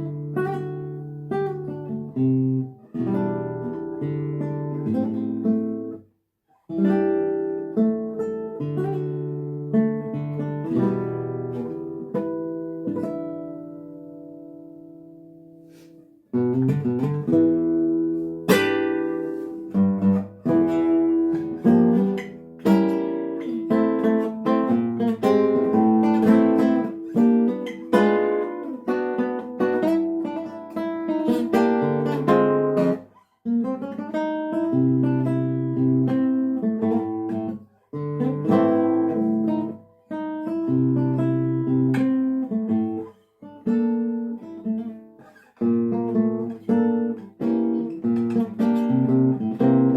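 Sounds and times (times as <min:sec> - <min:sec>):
solo classical guitar: 0:00.0 - 0:49.9.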